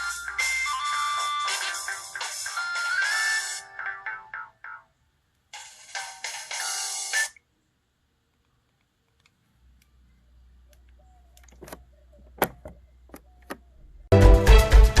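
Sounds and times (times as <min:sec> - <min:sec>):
faint low hum: 0:07.4 - 0:14.1.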